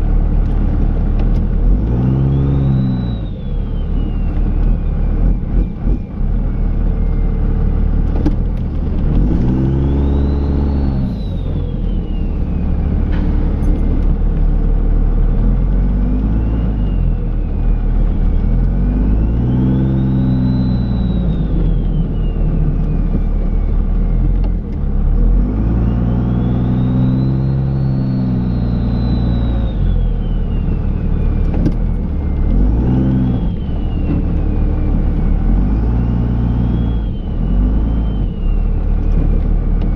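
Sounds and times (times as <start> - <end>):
diesel engine revving: 0.0 - 39.9
turbo whine: 0.0 - 39.9.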